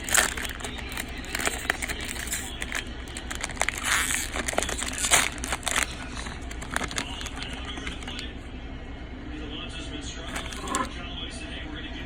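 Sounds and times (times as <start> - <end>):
packaging crinkling and rustling: 0.0 - 8.3, 10.3 - 10.9.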